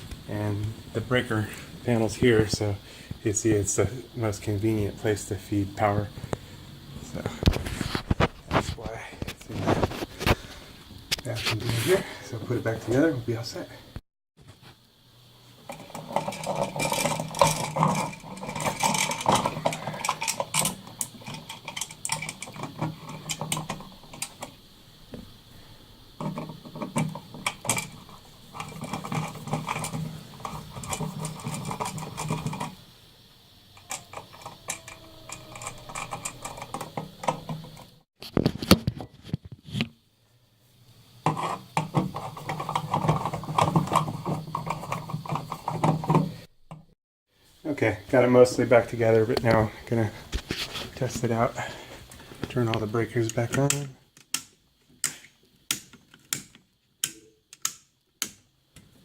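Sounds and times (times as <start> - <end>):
hand-work clicks and taps: 53.3 - 58.9.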